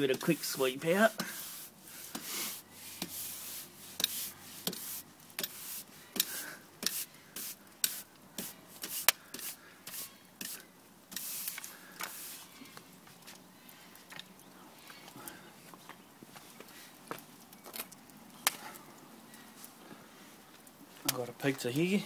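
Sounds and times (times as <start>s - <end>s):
brush sweeping oven floor: 0.0s - 12.6s.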